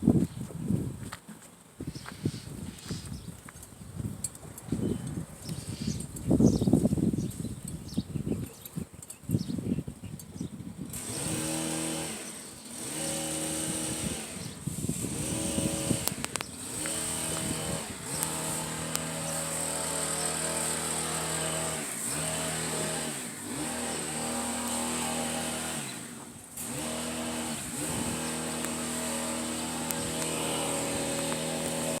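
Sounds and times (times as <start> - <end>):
hummingbird wings humming: 12.2 - 25.7.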